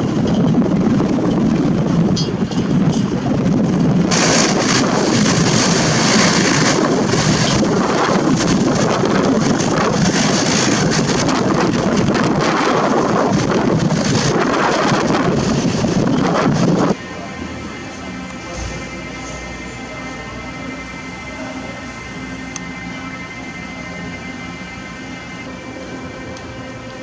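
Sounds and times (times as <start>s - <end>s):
wind buffeting microphone: 0.0s - 17.0s
jet engine noise: 0.0s - 27.0s.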